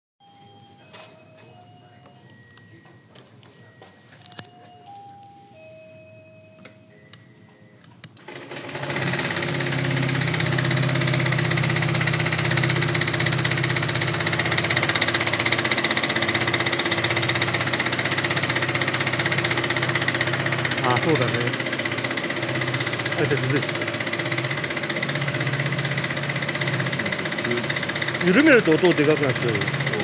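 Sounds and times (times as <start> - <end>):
scooter engine idling with clatter: 8.3 - 30.0.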